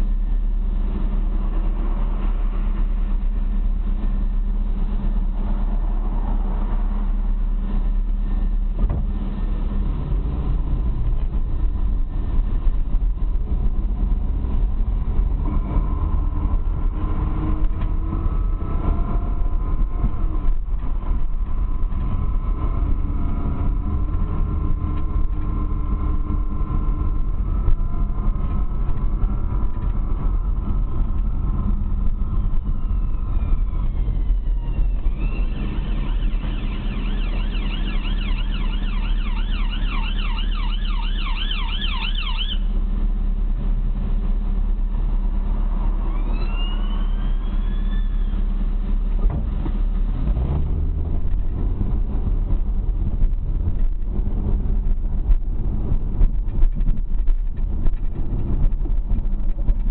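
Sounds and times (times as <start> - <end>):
thin steady whine: 0.0 - 50.6
car engine running: 0.0 - 59.9
fast-warbling siren: 32.2 - 42.7, 45.9 - 48.6.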